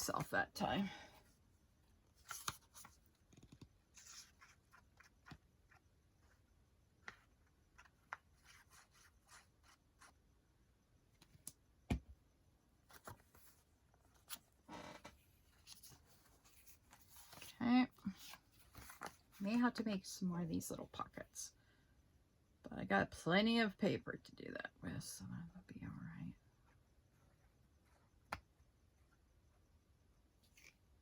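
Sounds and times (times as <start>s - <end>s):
paper pages turning and rustling: 2.2s - 5.8s, 18.1s - 19.4s.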